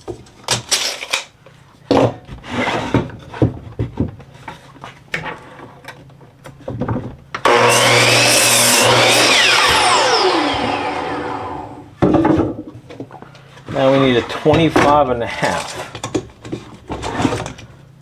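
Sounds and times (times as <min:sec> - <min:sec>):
miter saw cutting wood: 0:07.4 - 0:11.9.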